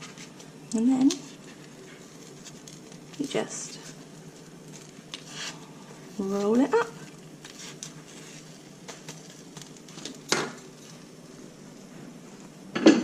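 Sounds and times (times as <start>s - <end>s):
faint sizzle: 0.0s - 13.0s
spatula scraping and tapping: 4.7s - 5.6s, 7.4s - 10.2s.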